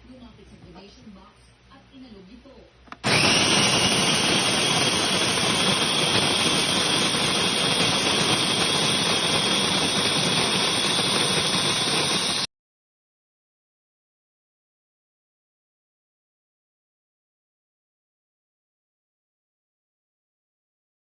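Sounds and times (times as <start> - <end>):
coffee grinder whining: 3.0 - 12.5.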